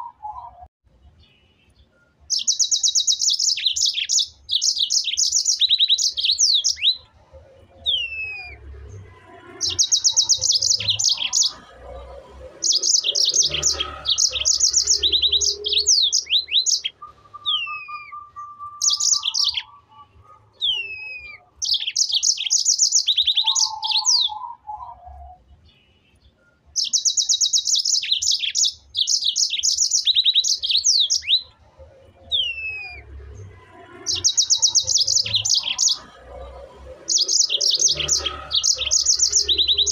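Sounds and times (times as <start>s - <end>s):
bird trilling chirps: 0.0s - 39.9s.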